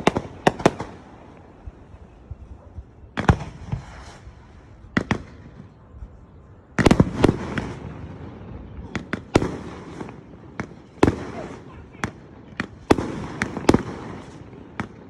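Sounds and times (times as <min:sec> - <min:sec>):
fireworks bangs: 0:00.0 - 0:05.9, 0:06.7 - 0:15.0.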